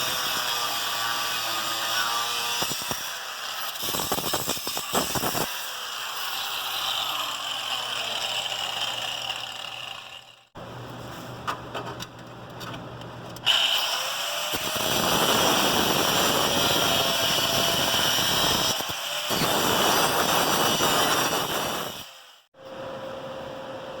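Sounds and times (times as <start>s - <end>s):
angle grinder cutting metal: 0.0s - 10.6s, 13.5s - 22.5s.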